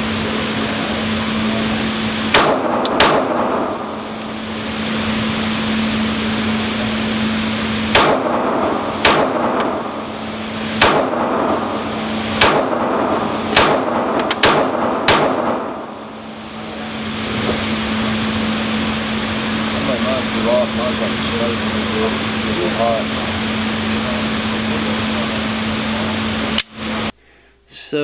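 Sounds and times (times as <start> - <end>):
low hum: 0.0 - 27.5
pistol shots: 2.3 - 3.8, 7.9 - 10.0, 10.6 - 15.9.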